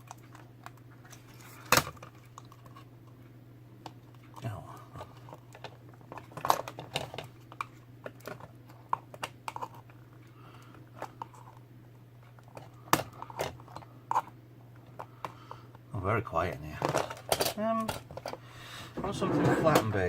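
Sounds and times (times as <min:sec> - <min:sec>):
steady low hum: 0:00.0 - 0:20.0
small parts clicking and tapping: 0:16.8 - 0:18.4.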